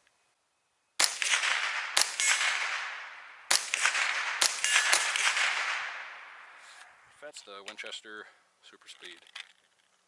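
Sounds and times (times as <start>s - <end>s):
rifle shots with echo: 1.0s - 7.0s.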